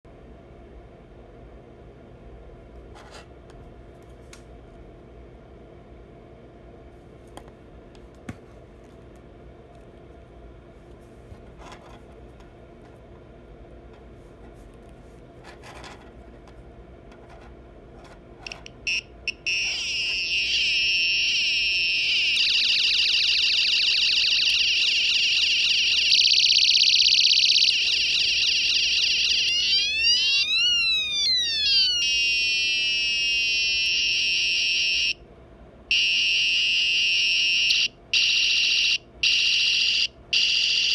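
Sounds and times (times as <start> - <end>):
electronic siren sweeps: 18.9 - 35.2
electronic warbling tones: 26.0 - 32.6.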